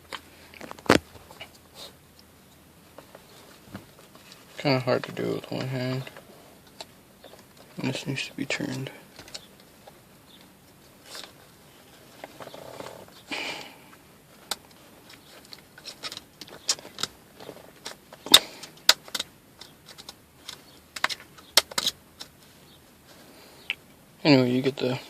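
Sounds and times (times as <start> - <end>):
parts clicking and rattling: 13.9 - 22.5.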